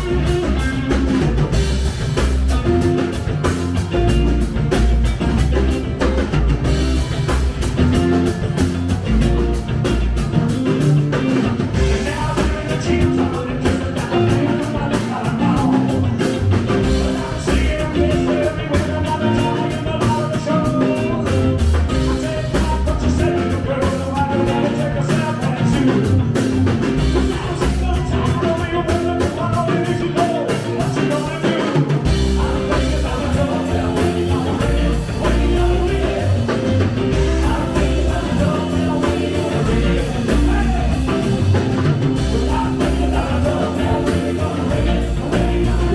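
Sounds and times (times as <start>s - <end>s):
driving drum kit: 0.0s - 45.9s
rock band playing live: 0.0s - 45.9s
person singing: 11.7s - 45.9s.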